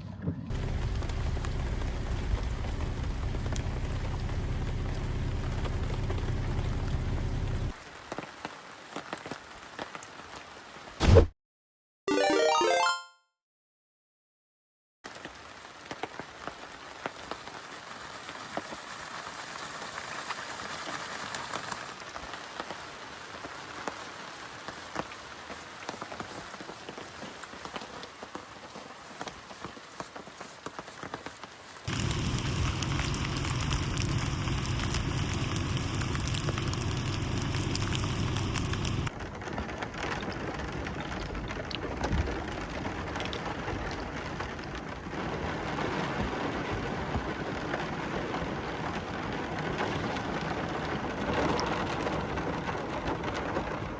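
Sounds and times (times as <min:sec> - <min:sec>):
deep rumble: 0:00.5 - 0:07.7, 0:31.9 - 0:39.1
rain pattering: 0:00.5 - 0:11.0, 0:15.1 - 0:53.9.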